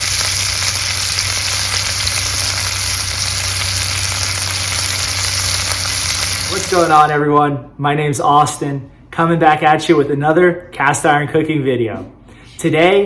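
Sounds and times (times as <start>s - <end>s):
food sizzling in a skillet: 0.0s - 7.0s
low hum: 0.0s - 7.2s.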